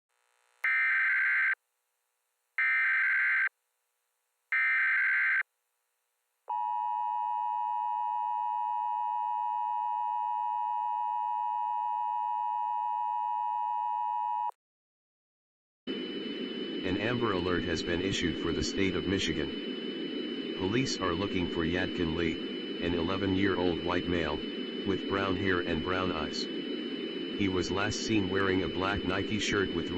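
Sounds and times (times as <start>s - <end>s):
warbling data burst screech: 16.8s - 29.9s.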